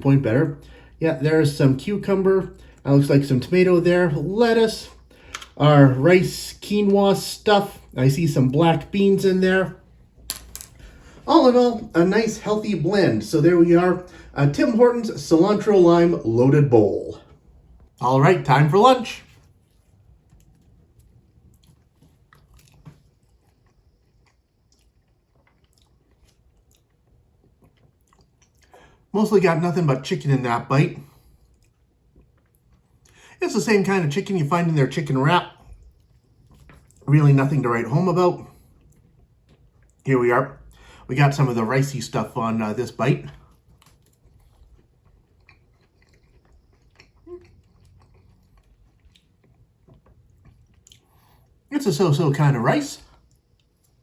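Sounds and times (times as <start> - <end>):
chewing crispy chicken: 17.0 - 29.1, 31.0 - 41.0, 41.8 - 52.2, 53.0 - 54.0.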